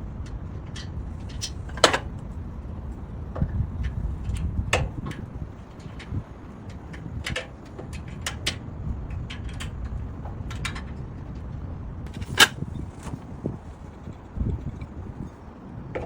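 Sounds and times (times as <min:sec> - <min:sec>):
clicks and knocks of parts handled: 0:00.2 - 0:02.1, 0:03.4 - 0:13.3.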